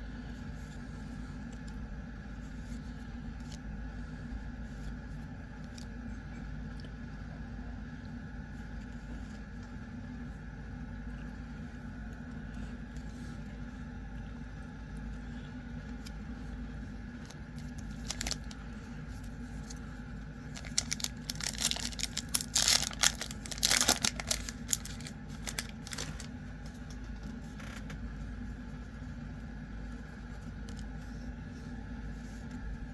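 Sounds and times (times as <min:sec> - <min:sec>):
steady low hum: 0:00.0 - 0:32.9
foil wrapper tearing and crinkling: 0:17.2 - 0:18.6, 0:20.5 - 0:26.3.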